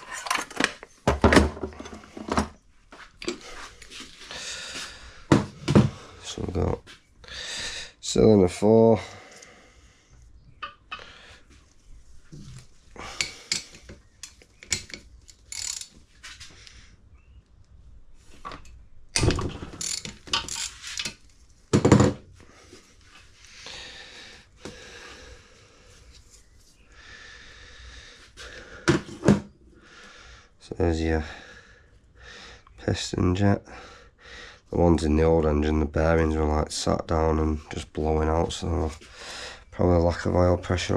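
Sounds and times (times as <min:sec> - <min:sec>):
ratchet clicking: 0:14.2 - 0:16.0, 0:19.8 - 0:21.1.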